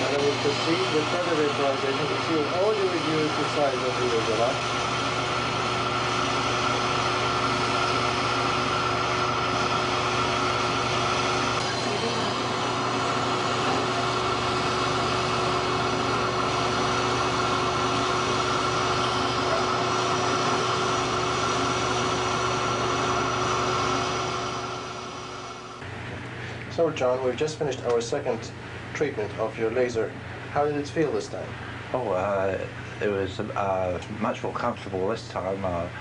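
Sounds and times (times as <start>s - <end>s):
surgical laser equipment whirring: 0.0s - 35.8s.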